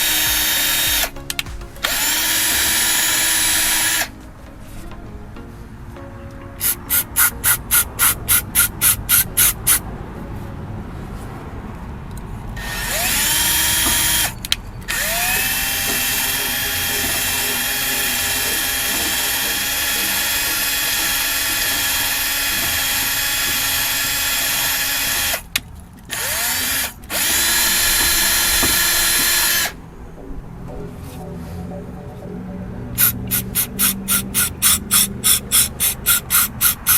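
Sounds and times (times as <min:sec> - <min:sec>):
electric drill whining: 0:00.0 - 0:04.1, 0:12.6 - 0:25.5, 0:26.1 - 0:29.8, 0:33.0 - 0:36.9.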